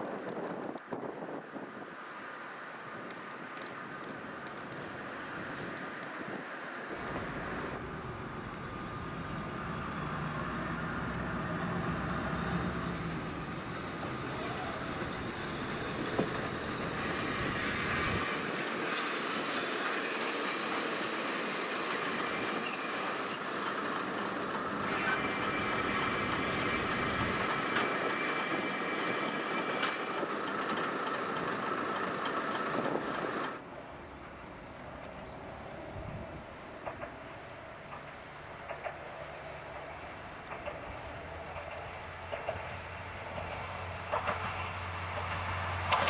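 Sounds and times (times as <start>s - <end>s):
diesel train running on track: 3.4s - 46.0s
wheel squeals on rails: 7.0s - 33.6s, 39.8s - 46.0s.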